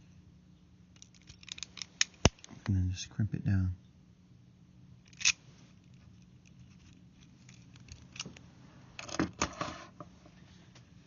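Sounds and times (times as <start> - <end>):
crimp tool clicks and rattles: 1.0 - 2.5.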